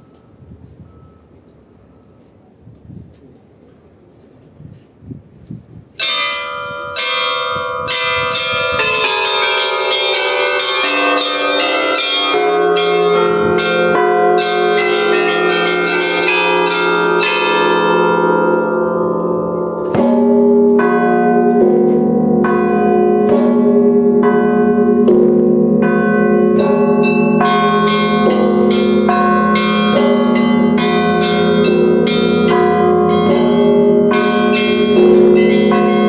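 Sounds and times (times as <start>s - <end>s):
lower bells ringing: 0.0s - 2.4s, 6.0s - 36.0s
small high bells ringing: 6.0s - 25.1s, 25.8s - 36.0s
deep bell strikes: 6.0s - 36.0s.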